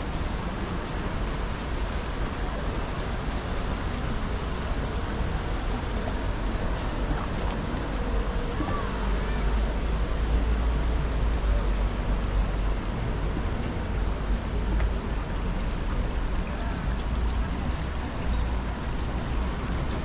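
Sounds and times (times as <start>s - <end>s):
city noise rush: 0.0s - 20.0s
deep low rumble: 1.5s - 15.8s.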